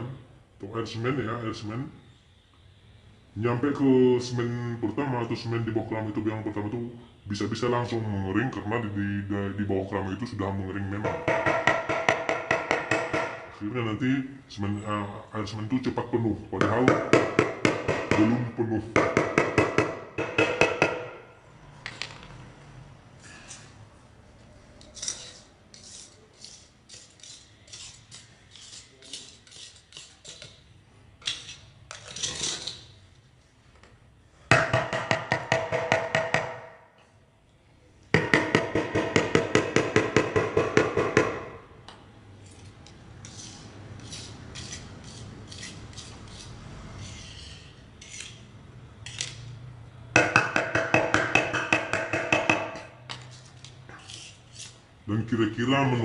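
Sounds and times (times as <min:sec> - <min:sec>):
hard taps on ceramic tiles: 0:11.0 - 0:13.4, 0:34.5 - 0:36.7, 0:38.1 - 0:42.0, 0:50.2 - 0:52.9.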